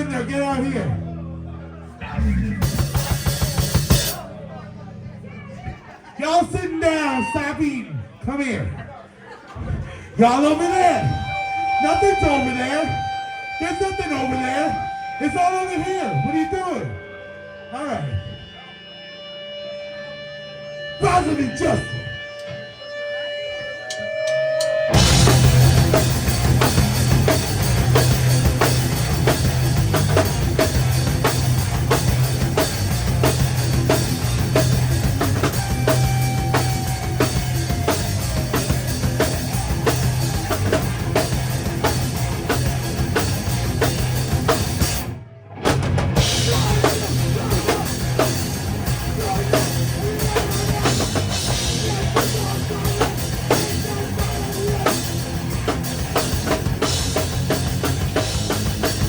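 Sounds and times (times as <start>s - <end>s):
live rock band playing: 0.0s - 7.4s, 10.4s - 59.0s
drum kit: 2.0s - 4.3s, 23.9s - 59.0s.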